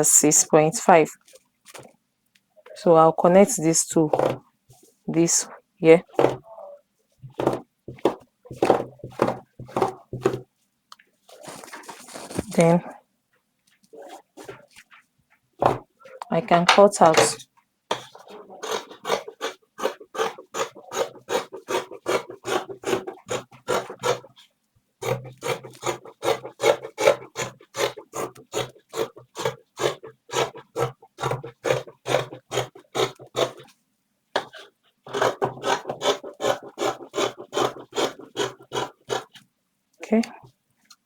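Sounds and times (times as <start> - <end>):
scissors cutting fabric: 11.5 - 12.8, 17.0 - 24.3, 25.0 - 33.6, 34.4 - 39.4.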